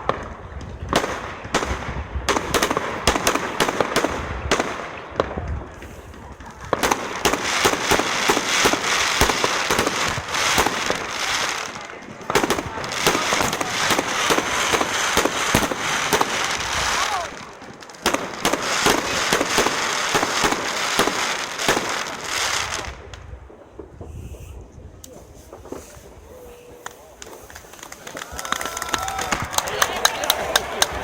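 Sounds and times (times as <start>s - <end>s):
fireworks bangs: 0.0s - 31.0s
fireworks crackling: 0.0s - 31.0s.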